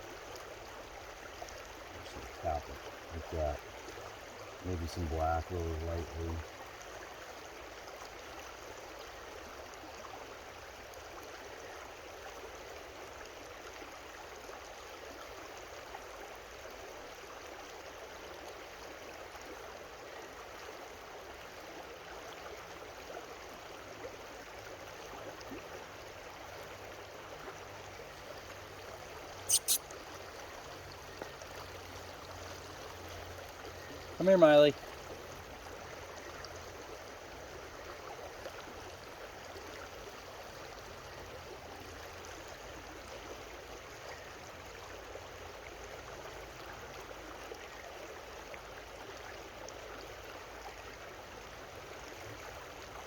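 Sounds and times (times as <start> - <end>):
creek water rushing: 0.0 - 53.0
short sharp clicks: 29.5 - 29.8.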